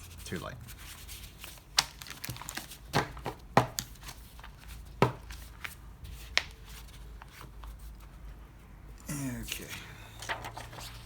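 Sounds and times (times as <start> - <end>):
paper pages rustling: 0.0 - 8.4, 9.5 - 11.0
paper knocks on a table: 2.3 - 3.9, 5.0 - 5.4.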